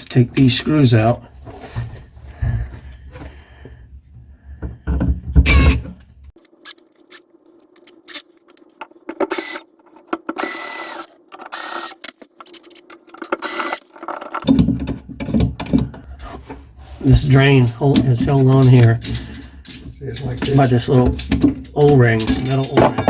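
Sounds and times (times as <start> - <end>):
power screwdriver running: 9.3 - 9.6, 10.4 - 12.0, 13.4 - 13.8
metal clicks and knocks: 14.0 - 23.0.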